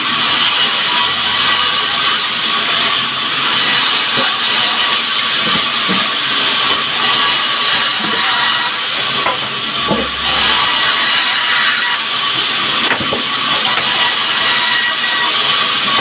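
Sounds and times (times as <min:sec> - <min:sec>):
band saw hissing: 0:03.4 - 0:16.0.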